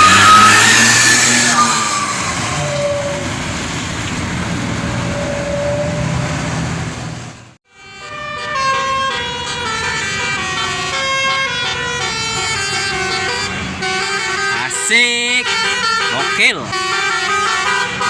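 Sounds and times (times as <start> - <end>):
multi-tone bus horn tune: 0.0 - 3.4, 5.0 - 6.4, 7.7 - 18.0
bus rushing past: 0.0 - 7.6.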